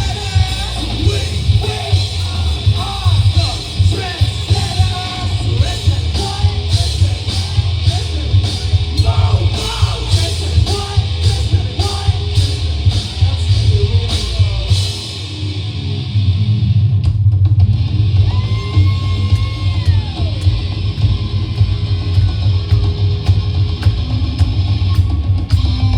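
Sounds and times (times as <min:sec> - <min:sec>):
person yelling singing: 0:00.0 - 0:14.9, 0:18.2 - 0:20.6
steady drum beat: 0:00.0 - 0:16.1, 0:16.9 - 0:25.9
live rock band playing: 0:00.0 - 0:17.0, 0:17.6 - 0:25.9
heavy bass: 0:00.0 - 0:25.9.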